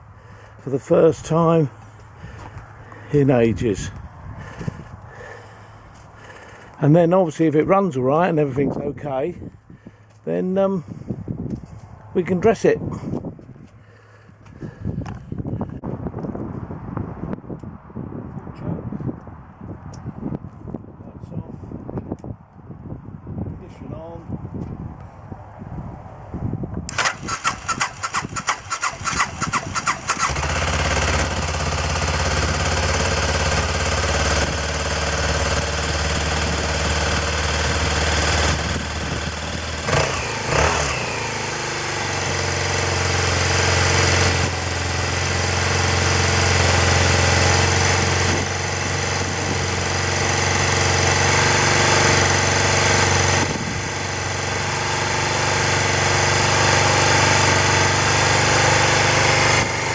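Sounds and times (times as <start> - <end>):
motorcycle engine starter cranking: 26.9 - 44.6
motorcycle engine idling: 26.9 - 50.9.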